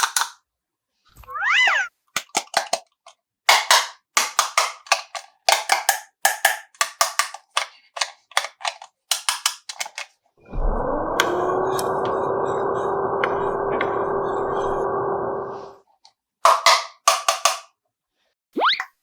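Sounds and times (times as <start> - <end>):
plastic toy pieces clicking: 0.0 - 0.4, 2.2 - 10.1, 16.5 - 17.7
steady hum with rising tone: 10.4 - 15.8.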